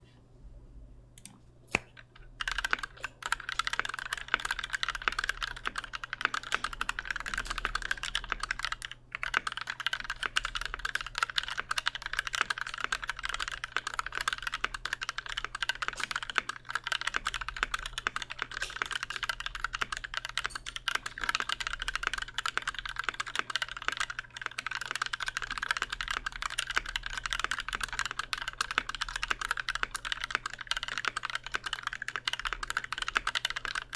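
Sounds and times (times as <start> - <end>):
fast mechanical keyboard typing: 2.0 - 33.9.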